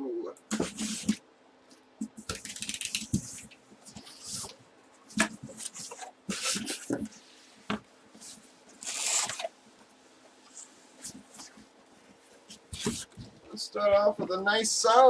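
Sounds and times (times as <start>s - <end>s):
cardboard packaging rustling: 8.2s - 9.5s.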